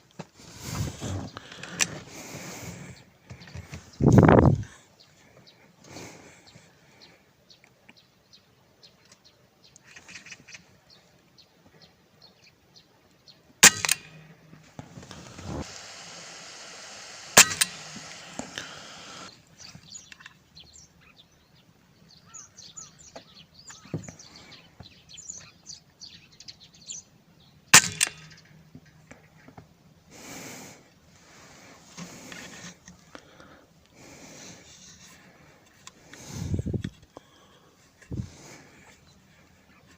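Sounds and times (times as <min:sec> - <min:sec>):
birds chirping: 0:00.4 - 0:39.9
air rifle shots: 0:13.6 - 0:19.3, 0:27.8 - 0:28.4.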